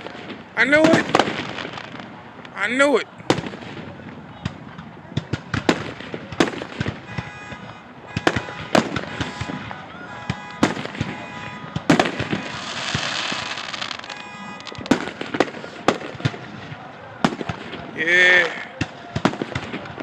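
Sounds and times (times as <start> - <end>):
fireworks hissing crackle: 0.0 - 2.7, 10.6 - 18.6
fireworks bursting with bangs: 0.0 - 20.0.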